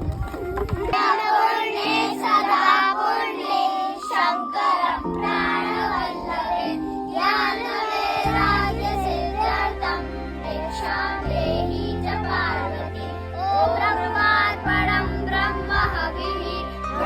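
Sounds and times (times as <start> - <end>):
children singing: 0.9 - 17.0
sustained accompanying chords: 1.0 - 17.0.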